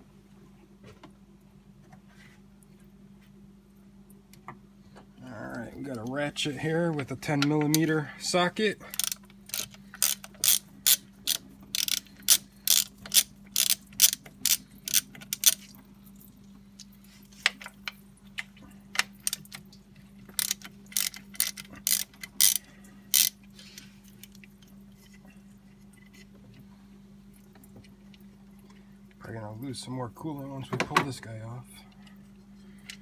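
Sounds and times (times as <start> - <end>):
ratchet clicking: 8.9 - 15.6, 20.4 - 23.4.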